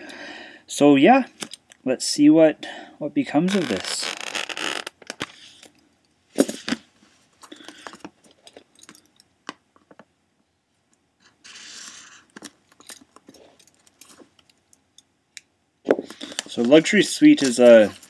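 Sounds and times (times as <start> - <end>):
plastic wrap and cardboard tearing: 3.5 - 5.3
small clicks and scrapes: 11.2 - 14.8.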